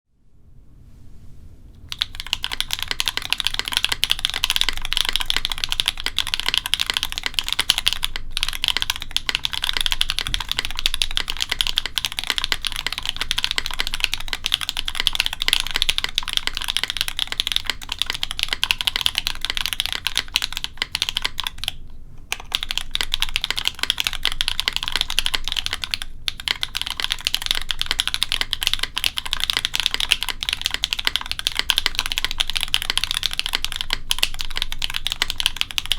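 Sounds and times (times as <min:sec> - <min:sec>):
fast typing on mechanical keyboard: 0:01.9 - 0:35.9.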